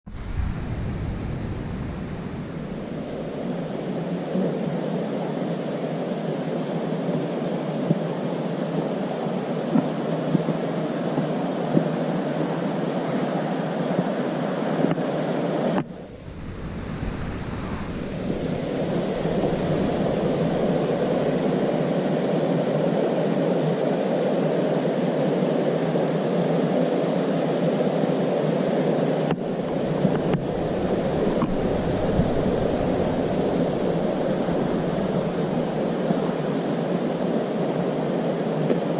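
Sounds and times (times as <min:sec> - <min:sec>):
stream rushing over rocks: 0:15.8 - 0:22.9, 0:29.4 - 0:36.6.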